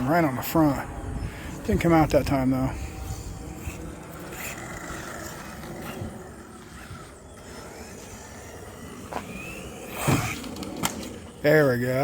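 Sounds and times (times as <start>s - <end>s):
toy truck motor whining: 2.7s - 11.8s.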